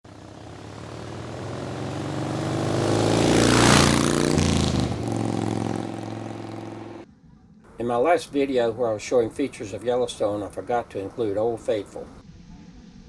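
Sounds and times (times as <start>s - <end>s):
motor vehicle driving past: 0.1s - 7.7s.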